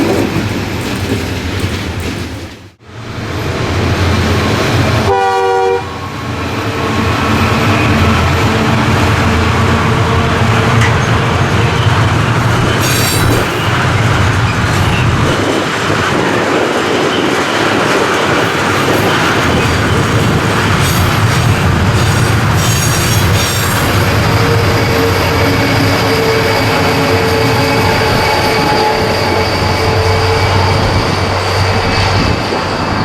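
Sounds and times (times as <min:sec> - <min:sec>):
wagons rolling on rails: 0:00.0 - 0:02.7.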